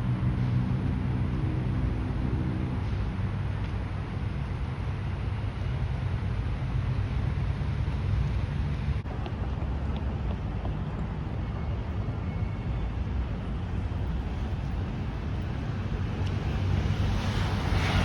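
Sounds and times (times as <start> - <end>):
vehicle engines rumbling: 0.0 - 18.0
wind or traffic hiss: 12.2 - 18.0.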